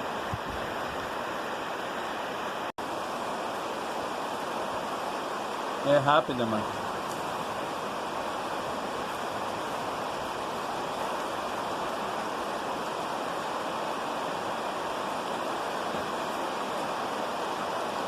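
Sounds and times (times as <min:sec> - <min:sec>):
steady outdoor hiss: 0:00.0 - 0:18.0.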